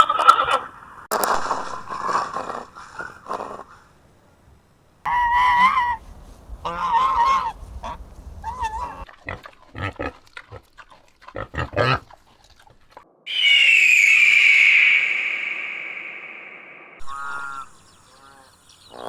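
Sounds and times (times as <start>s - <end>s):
animal calls: 6.7s - 16.0s, 17.0s - 19.0s
animal grunts: 9.1s - 13.0s.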